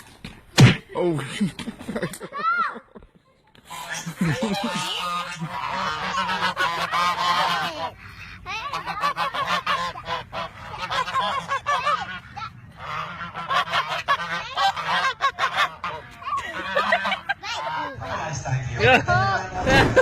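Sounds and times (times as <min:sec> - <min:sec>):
goose-like bird calls: 0:03.6 - 0:18.2.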